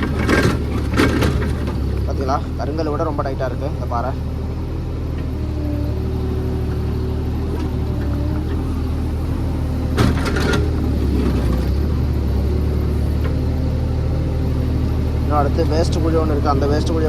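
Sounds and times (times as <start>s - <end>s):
clatter of knocks: 0.0s - 2.2s, 9.9s - 11.7s
excavator diesel engine running: 0.0s - 17.0s.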